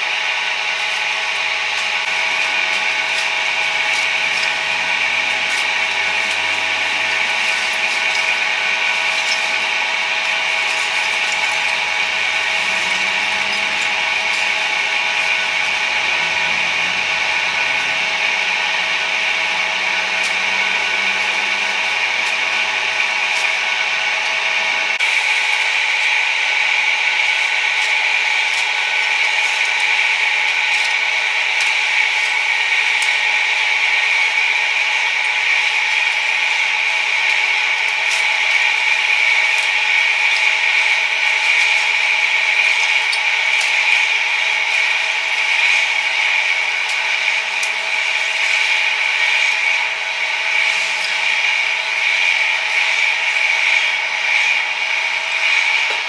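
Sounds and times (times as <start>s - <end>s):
small motor whining: 0.0s - 25.1s.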